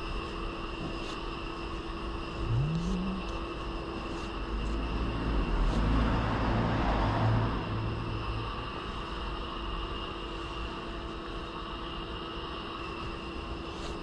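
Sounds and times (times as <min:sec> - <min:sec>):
minivan engine running: 0:02.2 - 0:11.4
short rising whine: 0:02.4 - 0:03.6.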